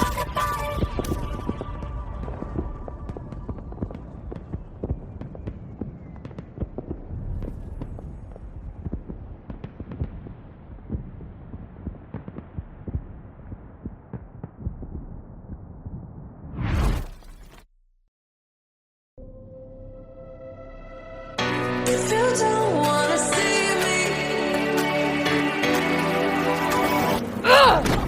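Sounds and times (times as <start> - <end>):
low rumble with crackles: 0.1 - 16.7.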